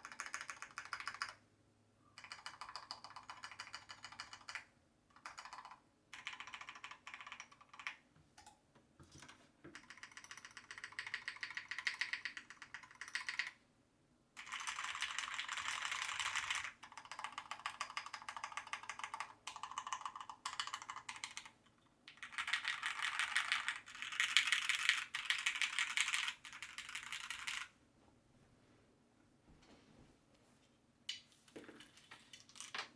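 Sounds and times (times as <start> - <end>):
typing on mechanical keyboard: 0.0 - 1.4, 2.2 - 8.5, 9.1 - 13.6, 14.4 - 27.7.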